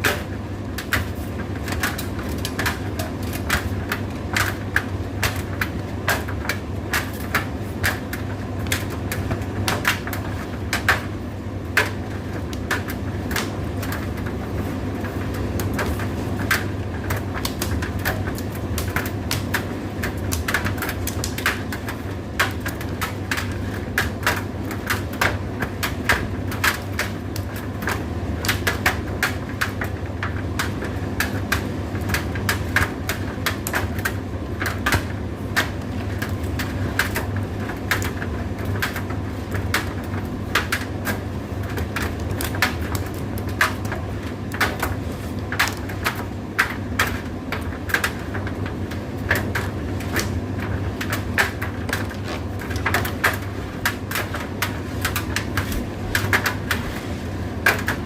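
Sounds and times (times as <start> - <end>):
tumble dryer motor hum: 0.0 - 58.0.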